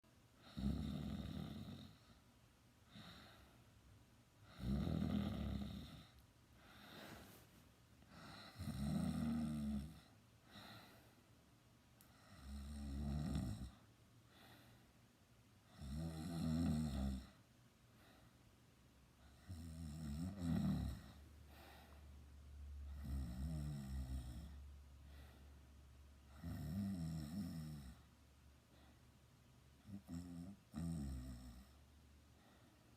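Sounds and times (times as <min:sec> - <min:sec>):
soft breathing: 0:00.3 - 0:11.4, 0:13.7 - 0:15.1, 0:17.3 - 0:18.6, 0:20.8 - 0:23.0, 0:24.2 - 0:26.4, 0:27.9 - 0:29.4, 0:31.6 - 0:32.9
person snoring: 0:00.4 - 0:02.1, 0:04.5 - 0:07.3, 0:08.1 - 0:10.9, 0:12.1 - 0:13.8, 0:15.7 - 0:17.4, 0:19.4 - 0:21.9, 0:22.9 - 0:24.6, 0:26.3 - 0:28.0, 0:29.9 - 0:31.8.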